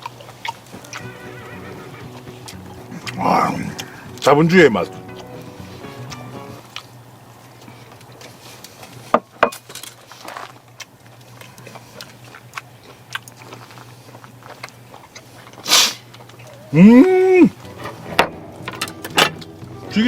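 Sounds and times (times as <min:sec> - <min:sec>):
breathy rush: 0:00.8 - 0:06.6.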